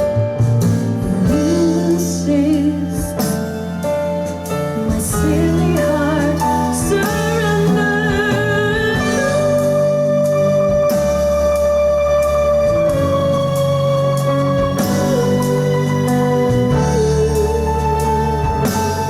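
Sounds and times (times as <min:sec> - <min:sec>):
keyboard chords and bass: 0:00.0 - 0:19.0.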